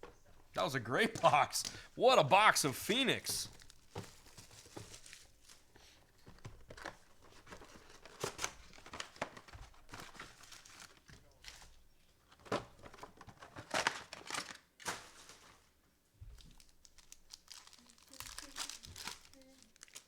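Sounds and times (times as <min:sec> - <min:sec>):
cards rustling: 0:00.6 - 0:11.7, 0:16.5 - 0:20.0
wrappers tearing and crinkling: 0:03.4 - 0:05.7, 0:06.7 - 0:11.8, 0:13.4 - 0:15.7, 0:16.4 - 0:20.0.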